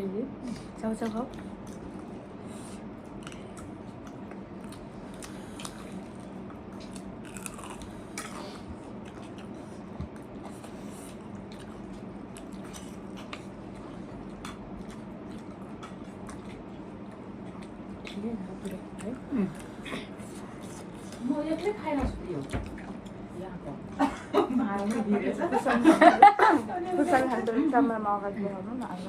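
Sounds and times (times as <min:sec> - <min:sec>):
steady low hum: 0:00.0 - 0:29.0
people chewing and biting: 0:00.4 - 0:23.4.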